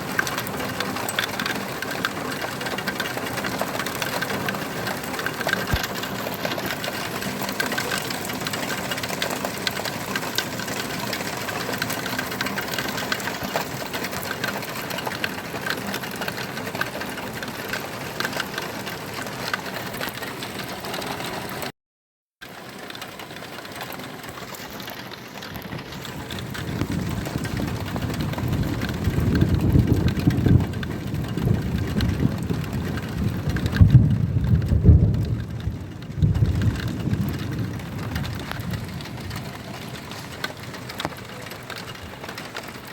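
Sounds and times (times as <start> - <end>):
steady noise with fine ticks: 0.0 - 21.7, 22.4 - 42.9
low rumble of thunder: 26.1 - 42.2.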